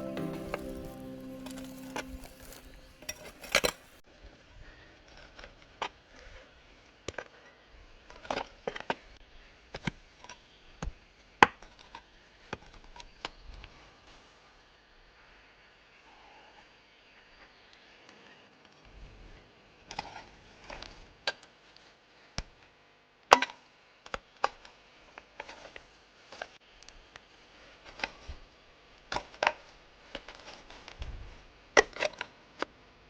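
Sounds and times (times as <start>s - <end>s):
digging tool striking stony soil: 0.0s - 4.0s.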